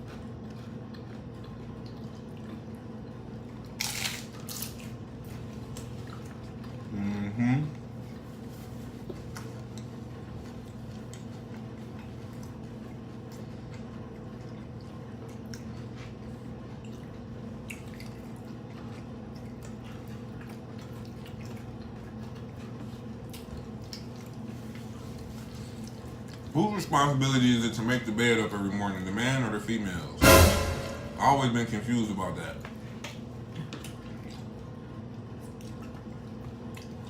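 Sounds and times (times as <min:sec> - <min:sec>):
wet chewing clicks and smacks: 0:00.0 - 0:06.9, 0:07.7 - 0:26.6, 0:33.0 - 0:37.0
steady low hum: 0:29.9 - 0:32.6.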